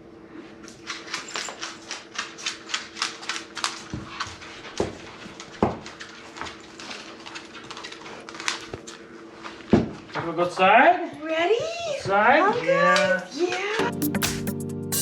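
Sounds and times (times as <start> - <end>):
dog claws clicking on hard floor: 0.6 - 11.2.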